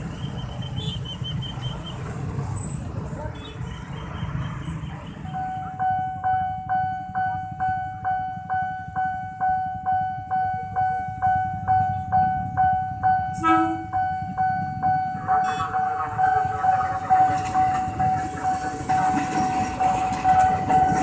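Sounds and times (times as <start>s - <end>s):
level-crossing warning bell: 5.1s - 21.0s.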